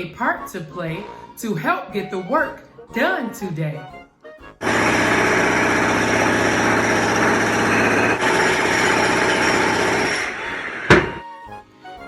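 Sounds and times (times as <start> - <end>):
motor engine running: 4.6 - 11.2.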